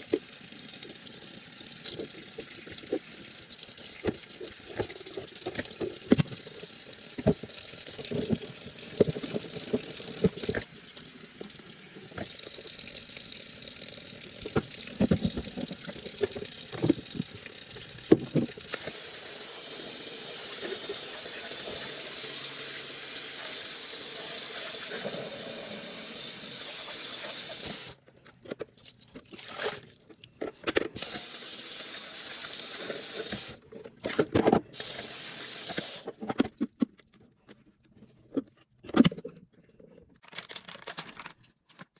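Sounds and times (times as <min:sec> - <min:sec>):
tap water running into sink: 0:00.0 - 0:28.0, 0:31.0 - 0:33.6.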